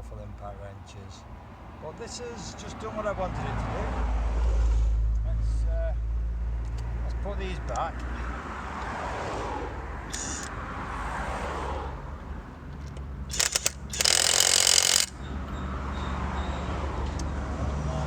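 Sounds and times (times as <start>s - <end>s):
impact wrench rattling: 12.7s - 15.2s.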